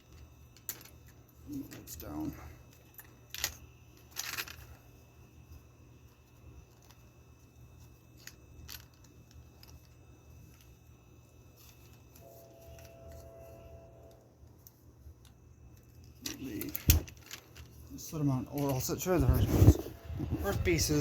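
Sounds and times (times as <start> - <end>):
faint steady tone: 0.0 - 21.0.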